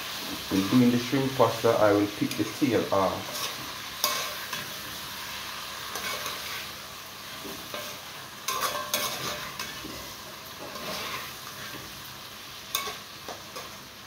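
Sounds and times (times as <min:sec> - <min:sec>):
shrimp sizzling in a pot: 0:00.0 - 0:14.0
sharp stirring scrapes: 0:03.2 - 0:04.6, 0:07.7 - 0:11.8.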